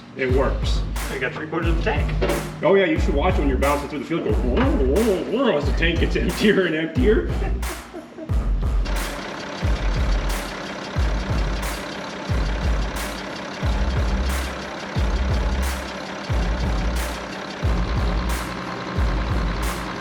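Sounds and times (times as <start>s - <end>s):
background music with bass beat: 0.0s - 20.0s
sharp hit: 0.3s - 7.9s, 8.7s - 20.0s.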